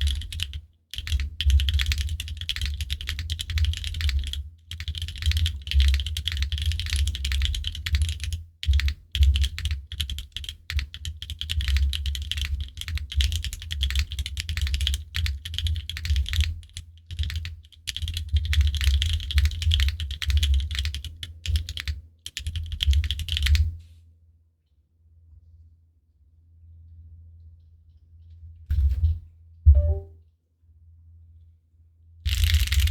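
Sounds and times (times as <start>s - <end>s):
mechanical keyboard typing: 0.0s - 23.7s, 32.3s - 32.9s.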